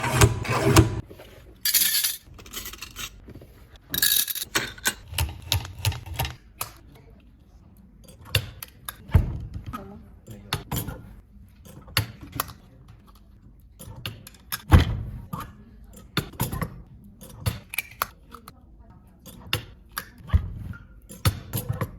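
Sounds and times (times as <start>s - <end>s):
small parts clicking and tapping: 3.9s - 6.8s.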